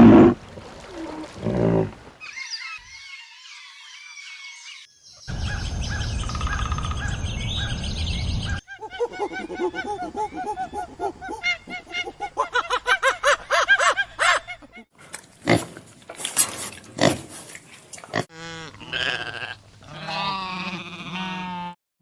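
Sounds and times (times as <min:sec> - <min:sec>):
wavering bleat: 0:00.0 - 0:02.1, 0:18.4 - 0:21.8
animal grunts: 0:00.0 - 0:02.2.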